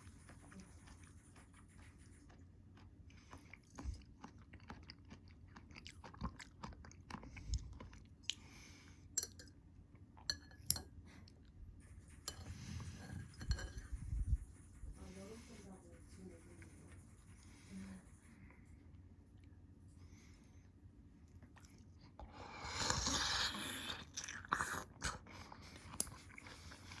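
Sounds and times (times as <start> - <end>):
person chewing crunchy food: 2.0 - 9.5, 21.4 - 27.0.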